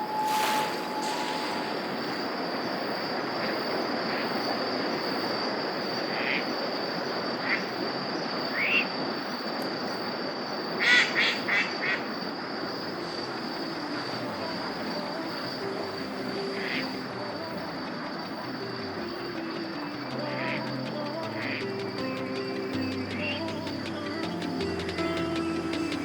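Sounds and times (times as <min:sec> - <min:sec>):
steady high tone: 0:00.0 - 0:03.4, 0:12.9 - 0:26.0
constant hiss: 0:00.0 - 0:26.0.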